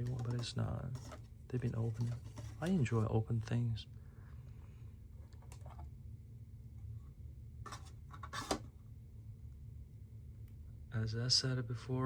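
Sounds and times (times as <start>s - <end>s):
packaging rustling: 0.0s - 2.9s
low room hum: 0.0s - 12.0s.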